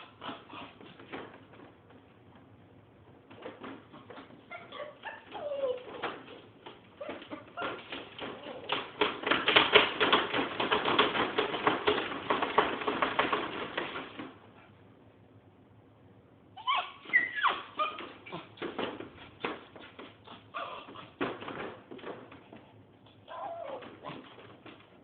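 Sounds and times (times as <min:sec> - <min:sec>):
dog whining: 0:00.0 - 0:01.1, 0:03.9 - 0:09.0, 0:16.6 - 0:18.6, 0:20.2 - 0:21.3, 0:23.0 - 0:24.8.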